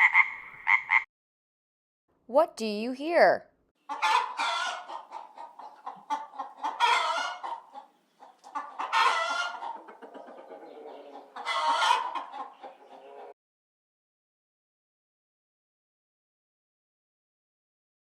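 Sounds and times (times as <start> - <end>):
chicken squawking: 0.0 - 1.1, 3.9 - 13.3
chicken clucking: 3.8 - 13.4.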